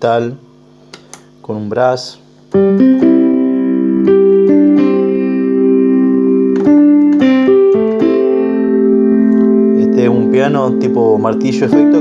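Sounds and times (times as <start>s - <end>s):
keyboard playing sustained chords: 2.5s - 12.0s.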